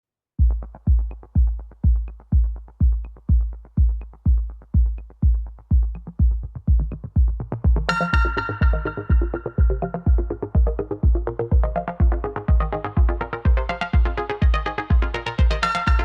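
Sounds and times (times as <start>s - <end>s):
heavy kick drum: 0.4s - 16.0s
electronic dance music: 0.5s - 16.0s
bright synth chord: 7.9s - 10.3s.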